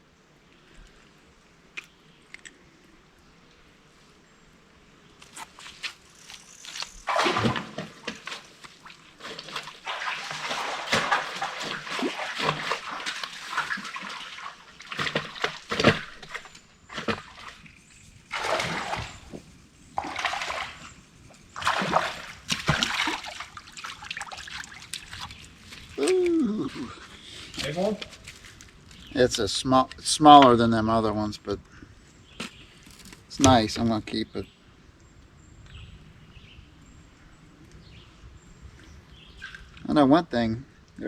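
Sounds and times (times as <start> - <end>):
water splashing in stream: 6.6 - 17.7, 18.3 - 26.4.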